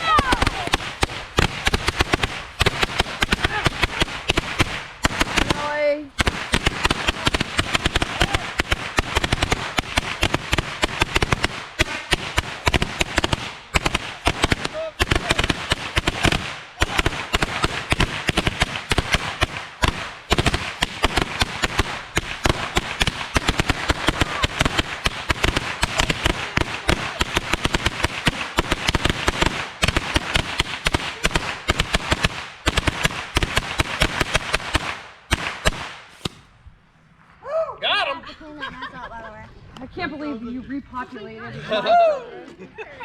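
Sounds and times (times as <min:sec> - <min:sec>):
firecrackers cracking rapidly: 0:00.0 - 0:36.5.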